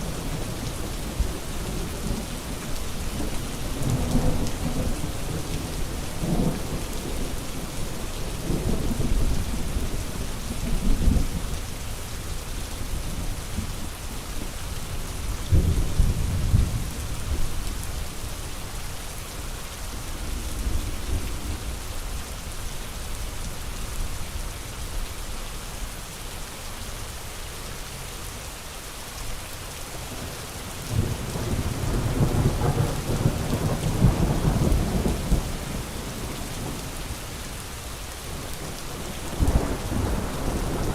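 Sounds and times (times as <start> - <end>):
heavy rain: 0.0 - 40.9
rolling thunder: 30.9 - 36.8, 38.3 - 40.9.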